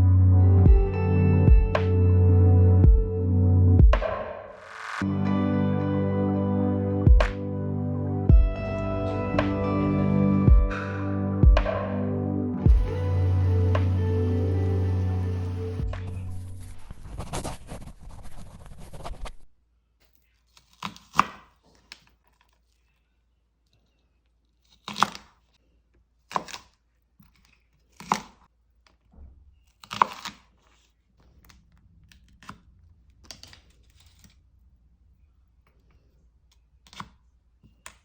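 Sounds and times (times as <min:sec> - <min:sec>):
tearing rustle: 0:16.1 - 0:19.5.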